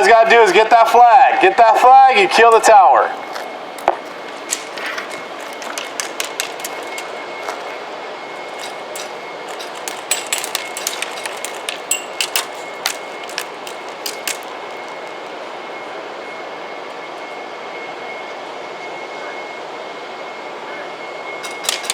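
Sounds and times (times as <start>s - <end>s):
pellets striking hard surfaces: 3.8s - 7.8s, 8.4s - 15.3s, 21.4s - 21.9s.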